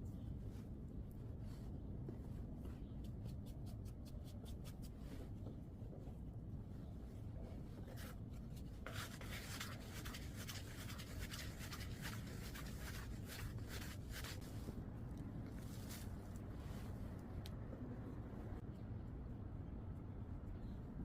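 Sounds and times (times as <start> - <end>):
hands rubbing bread dough: 1.4 - 6.2, 7.2 - 14.7.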